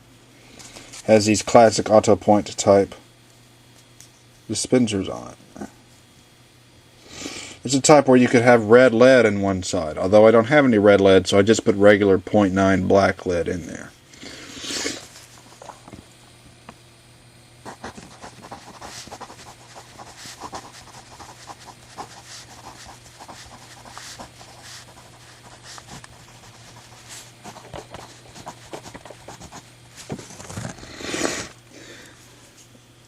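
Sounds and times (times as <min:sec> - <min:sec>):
steady low hum: 0:00.0 - 0:33.0
loud breath: 0:30.8 - 0:32.3.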